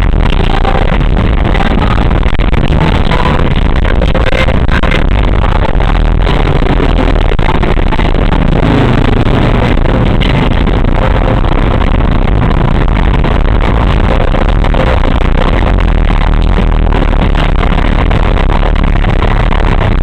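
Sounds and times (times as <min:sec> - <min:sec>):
engine and road rumble: 0:00.0 - 0:20.0.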